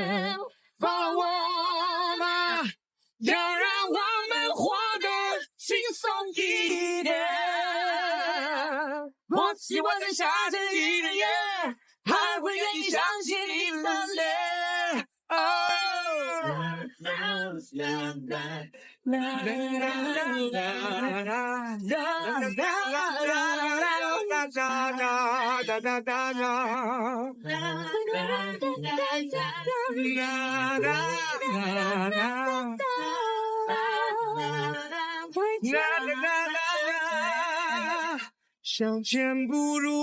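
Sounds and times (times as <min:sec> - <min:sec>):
high voice singing with vibrato: 0:00.0 - 0:38.3
lower voice singing: 0:27.2 - 0:38.2.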